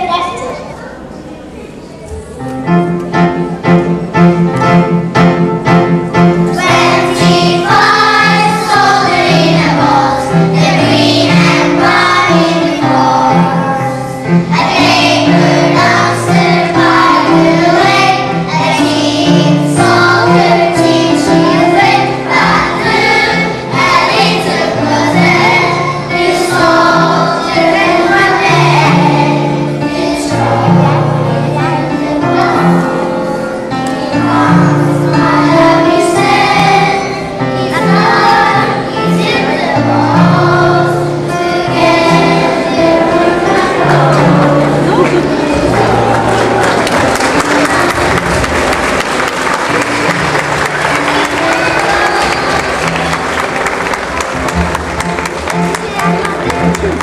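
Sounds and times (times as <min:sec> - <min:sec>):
group of voices singing: 0:06.5 - 0:33.2, 0:33.8 - 0:48.3.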